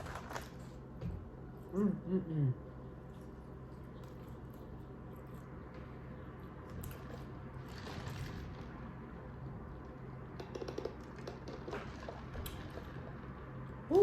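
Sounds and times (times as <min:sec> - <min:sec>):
low hum: 0:00.0 - 0:14.0
wet chewing: 0:02.8 - 0:08.5.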